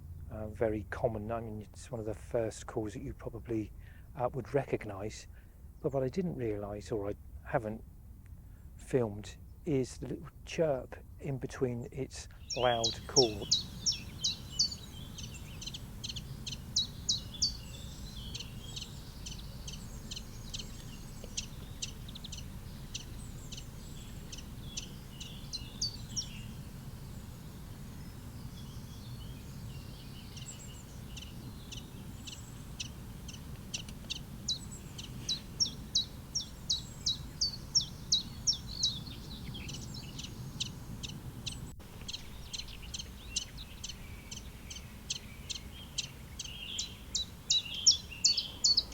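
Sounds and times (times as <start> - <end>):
low outdoor rumble: 0.0 - 48.9
bird singing high repeated notes: 12.4 - 48.9.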